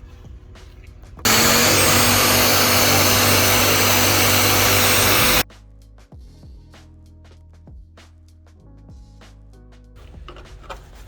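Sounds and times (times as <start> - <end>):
power tool motor running: 1.3 - 5.4.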